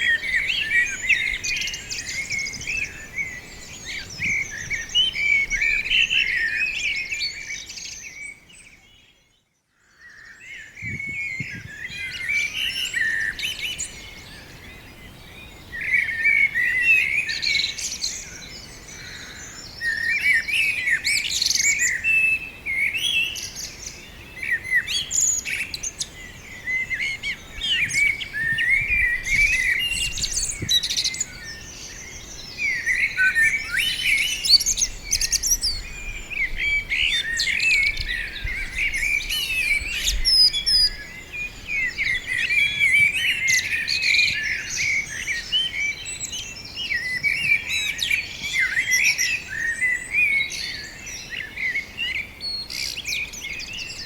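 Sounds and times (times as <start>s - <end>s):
songbirds chirping and warbling: 0.0s - 54.0s
faint low wind rumble: 26.2s - 43.3s.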